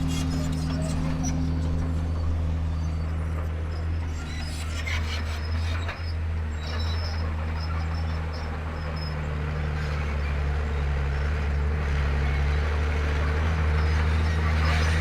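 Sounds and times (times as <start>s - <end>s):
bulldozer diesel engine running: 0.0s - 15.0s.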